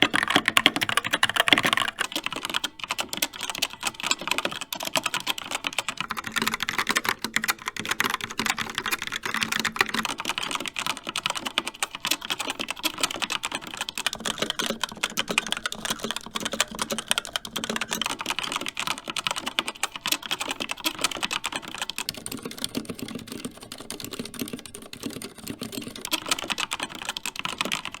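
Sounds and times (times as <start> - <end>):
fast typing on mechanical keyboard: 0.0 - 28.0.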